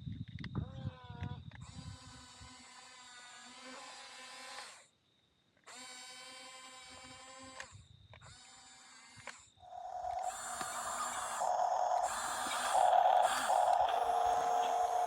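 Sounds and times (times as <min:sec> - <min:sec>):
electric motors whining: 0:09.7 - 0:15.0.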